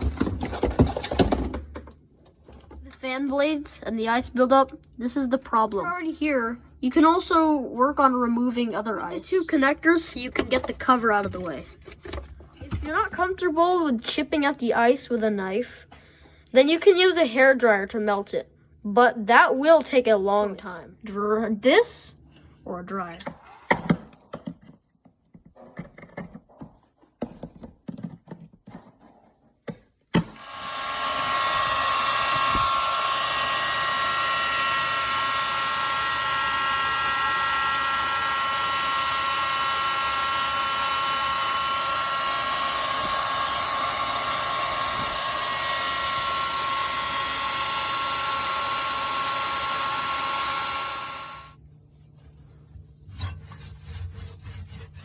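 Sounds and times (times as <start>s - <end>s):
hair dryer whining: 30.2s - 51.6s.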